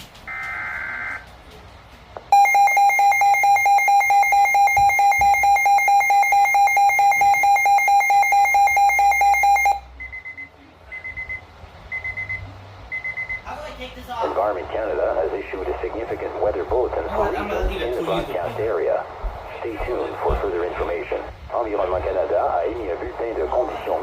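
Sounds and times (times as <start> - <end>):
rapidly pulsing alarm tone: 2.4 - 9.9.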